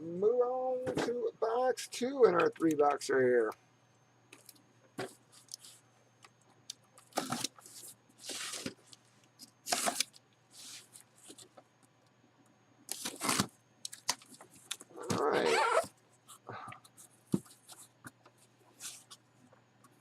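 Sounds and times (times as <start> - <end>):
cardboard rustling and scraping: 7.0 - 8.9
cardboard tearing: 12.9 - 13.5.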